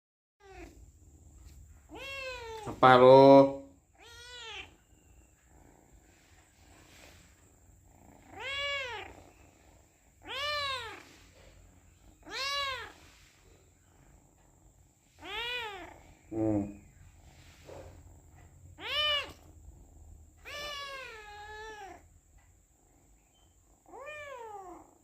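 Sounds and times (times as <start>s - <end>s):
cat meowing: 0.4s - 0.8s, 1.9s - 2.8s, 3.9s - 5.0s, 8.3s - 9.2s, 10.2s - 11.1s, 12.1s - 13.0s, 15.2s - 16.0s, 18.8s - 19.5s, 20.4s - 22.0s, 23.9s - 24.9s.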